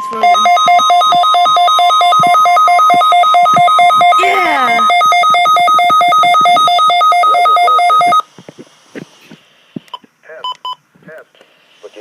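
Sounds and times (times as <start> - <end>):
two-pitch electronic alarm beeping: 0.0 - 8.3.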